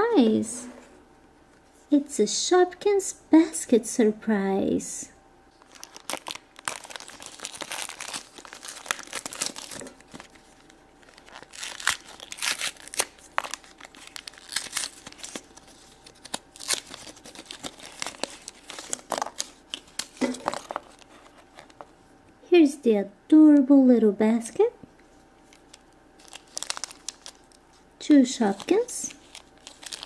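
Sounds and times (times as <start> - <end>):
packaging crinkling and tearing: 5.6 - 21.9, 25.4 - 30.0.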